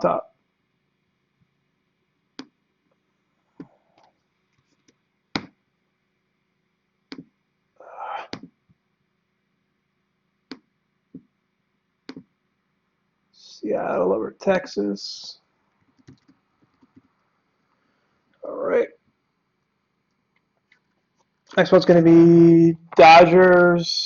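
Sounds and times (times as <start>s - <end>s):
computer mouse clicks: 15.8s - 17.2s.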